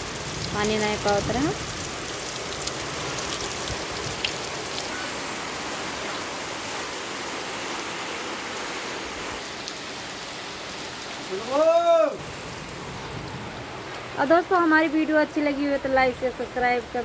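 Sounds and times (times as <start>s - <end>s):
heavy rain: 0.0s - 17.0s
raindrop ticks: 0.1s - 5.0s.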